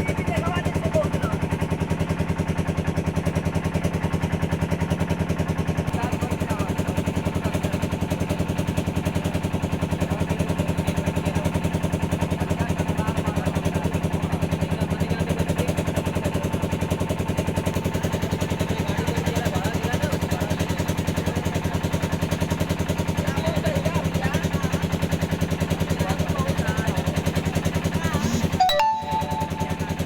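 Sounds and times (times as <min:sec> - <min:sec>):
small engine running: 0:00.0 - 0:30.0.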